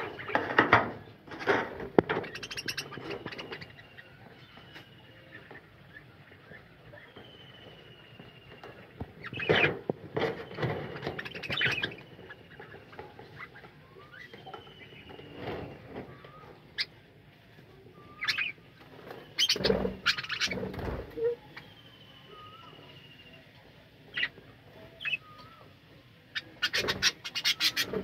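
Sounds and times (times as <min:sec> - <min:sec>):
budgerigars chirping and chattering: 0:00.0 - 0:00.6, 0:02.0 - 0:15.8, 0:18.1 - 0:21.7, 0:24.1 - 0:25.7, 0:26.3 - 0:28.0.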